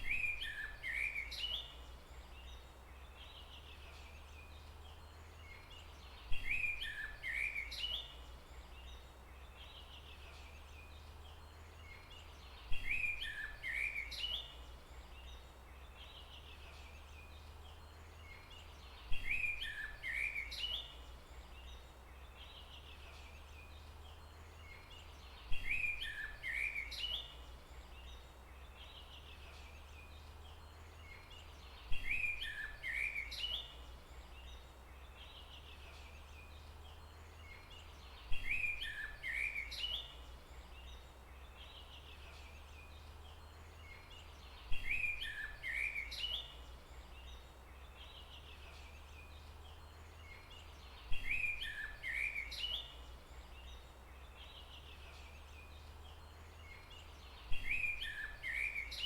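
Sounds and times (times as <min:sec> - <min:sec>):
bird chirping call: 0:22.4 - 0:59.0.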